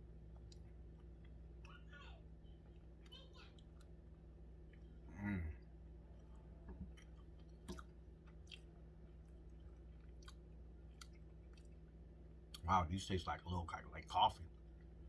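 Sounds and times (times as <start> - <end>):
voiced hum: 0.0 - 15.0
chewing mouth sounds: 6.1 - 11.9.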